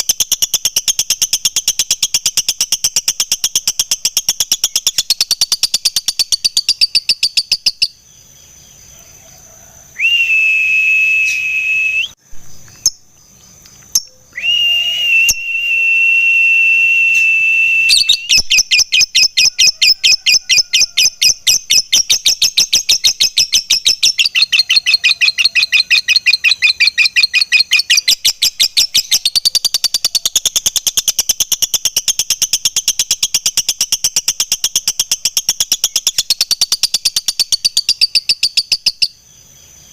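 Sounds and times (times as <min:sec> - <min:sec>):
lovebird chattering: 0:00.0 - 0:08.0, 0:18.0 - 0:39.2
bird whistled notes: 0:10.0 - 0:12.2, 0:14.0 - 0:30.9.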